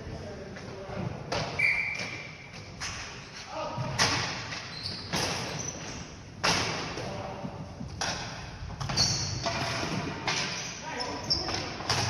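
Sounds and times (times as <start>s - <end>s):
voices in background: 10.7s - 12.0s.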